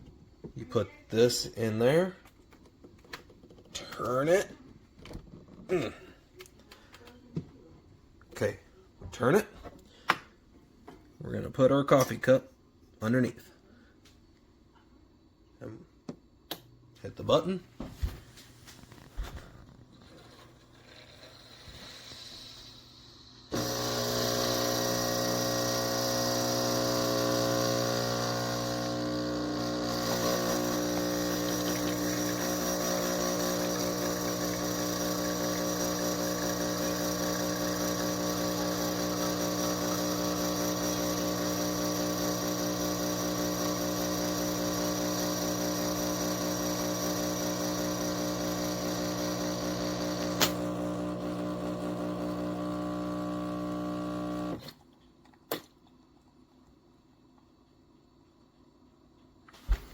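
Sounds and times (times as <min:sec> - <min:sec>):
espresso machine pump humming: 0:20.8 - 0:54.6.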